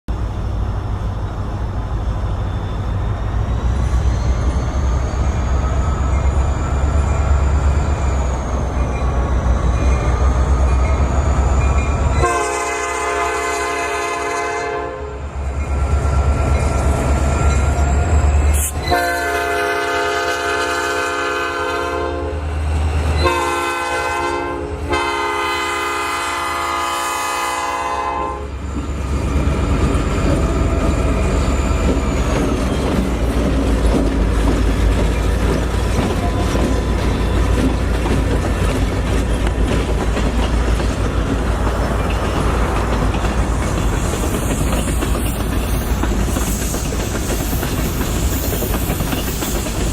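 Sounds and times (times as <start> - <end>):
diesel locomotive engine rumbling: 0.1 - 49.9
rail cars rolling: 0.1 - 49.9
train air horn: 12.2 - 15.4, 18.5 - 22.5, 23.2 - 28.6.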